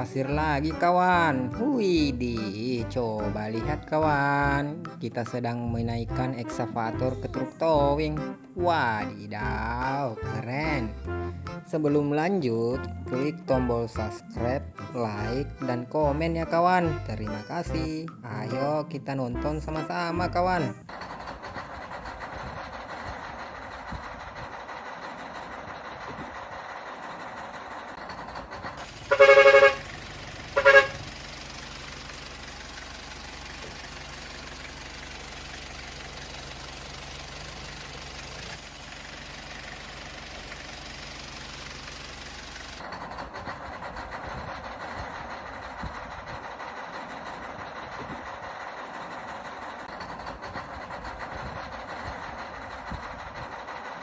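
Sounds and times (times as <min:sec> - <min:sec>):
low engine rumble: 0:00.0 - 0:54.0
truck horn honking: 0:06.0 - 0:18.7, 0:19.3 - 0:20.9, 0:29.1 - 0:31.1.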